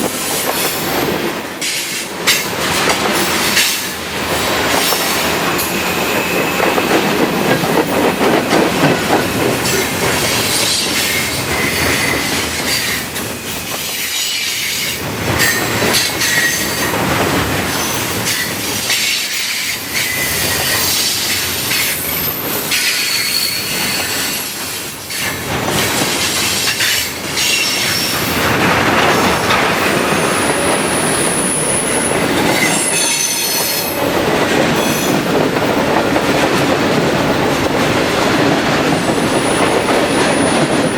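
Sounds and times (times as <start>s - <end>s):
freight train rattling and rumbling: 0.0s - 40.9s
wheels clacking over rail joints: 0.0s - 40.9s
train wheels squealing: 4.8s - 7.4s, 9.6s - 17.0s, 17.7s - 25.4s, 26.2s - 28.4s, 30.2s - 34.1s.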